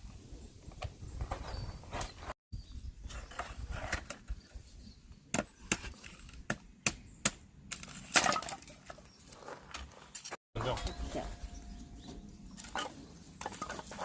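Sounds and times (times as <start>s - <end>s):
firewood knocks and cracks: 5.3s - 9.1s.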